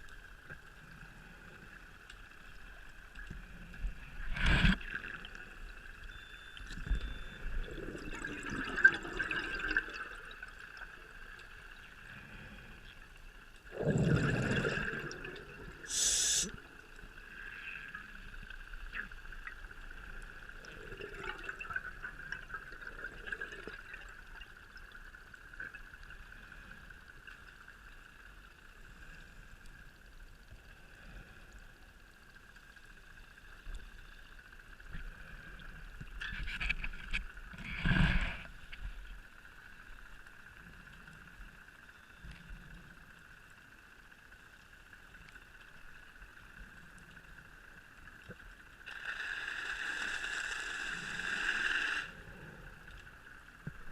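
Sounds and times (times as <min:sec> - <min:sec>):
steady high hum: 0:00.0 - 0:53.9
regulator bubbles gushing: 0:07.0 - 0:11.2, 0:13.7 - 0:17.2, 0:20.2 - 0:26.0.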